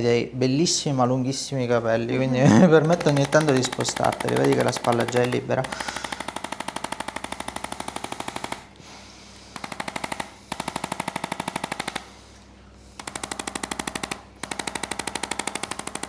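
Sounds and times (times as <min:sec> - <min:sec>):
electric percussion device tapping: 0:02.7 - 0:07.2.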